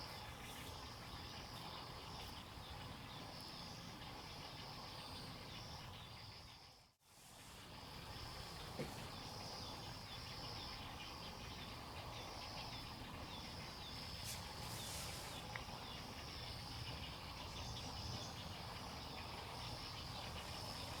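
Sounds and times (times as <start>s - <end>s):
insects chirring: 7.7s - 21.0s
brief hiss: 14.2s - 15.6s.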